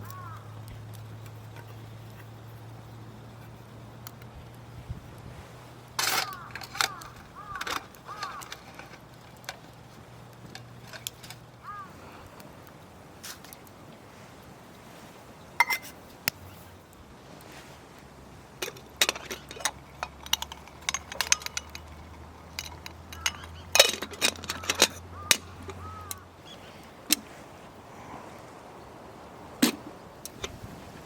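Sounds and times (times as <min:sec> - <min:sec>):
camp cookware clinking: 0:05.4 - 0:17.6, 0:18.4 - 0:27.6, 0:29.4 - 0:31.0.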